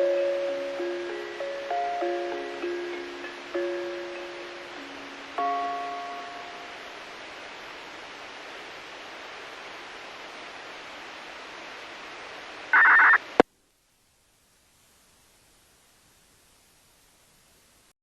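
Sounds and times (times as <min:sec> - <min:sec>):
radio hiss: 0:07.0 - 0:13.5.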